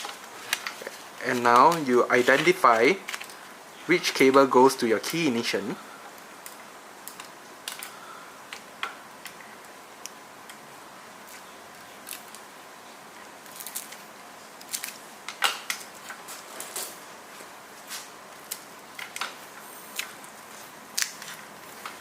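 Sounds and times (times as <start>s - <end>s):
wiring and plastic parts clicking: 0.0s - 3.4s, 6.4s - 10.6s
faint steady hiss: 0.0s - 22.0s.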